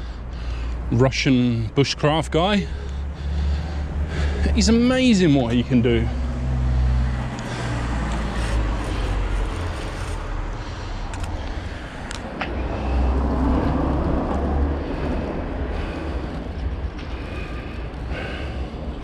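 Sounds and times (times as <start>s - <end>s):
road traffic noise: 0.0s - 19.0s
wind rumbling on microphone: 5.4s - 19.0s.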